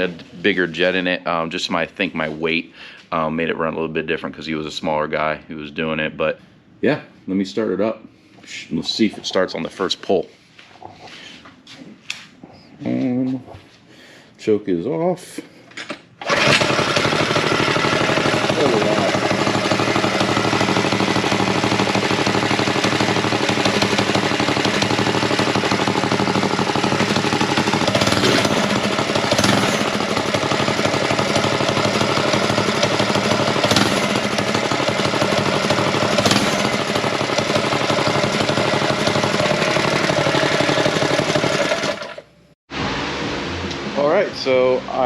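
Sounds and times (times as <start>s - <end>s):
small engine running: 16.2s - 44.3s.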